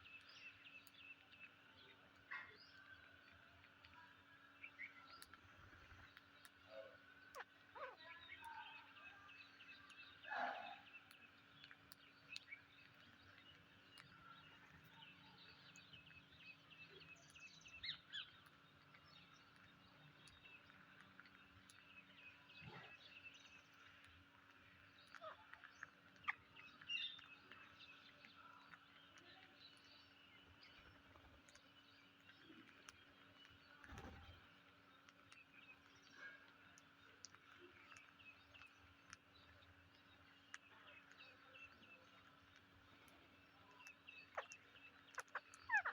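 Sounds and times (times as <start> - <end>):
parakeets chirping: 7.4 - 8.1, 44.3 - 45.9.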